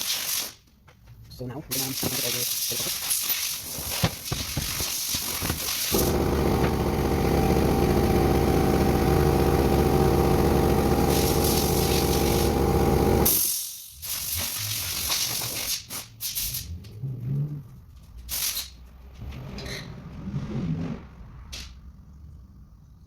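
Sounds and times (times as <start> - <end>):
motor running loudly: 5.9 - 13.4.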